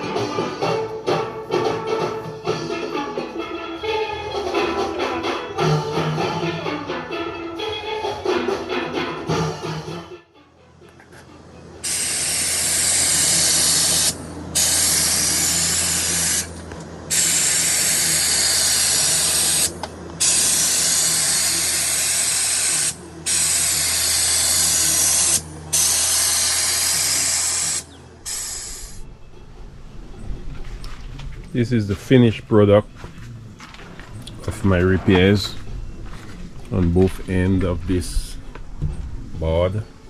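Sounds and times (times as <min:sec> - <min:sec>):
steady low hum: 0:00.0 - 0:40.0
compressed air hissing: 0:11.8 - 0:29.1.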